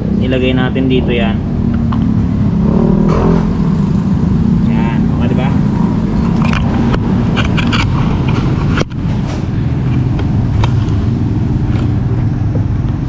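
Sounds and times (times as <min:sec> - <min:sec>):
vehicle engines rumbling: 0:00.0 - 0:13.0.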